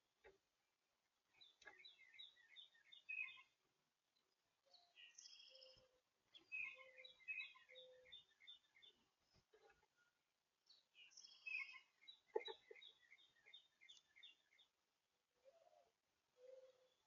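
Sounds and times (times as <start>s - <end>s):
songbird twittering: 1.4s - 3.5s, 4.9s - 9.0s, 10.7s - 14.7s.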